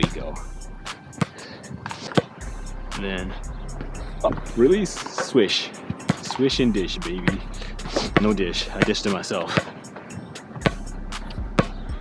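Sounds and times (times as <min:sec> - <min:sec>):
basketball bouncing on court: 0:01.2 - 0:01.4, 0:03.3 - 0:05.1, 0:06.0 - 0:07.5, 0:08.1 - 0:09.8, 0:10.6 - 0:12.0.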